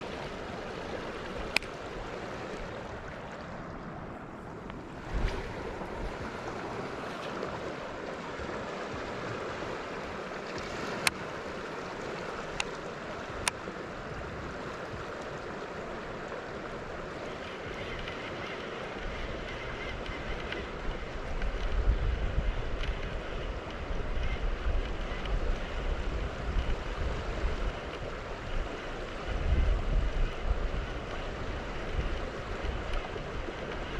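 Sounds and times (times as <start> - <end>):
wind buffeting microphone: 0.0 - 9.5, 17.2 - 33.9
moving water: 0.0 - 33.9.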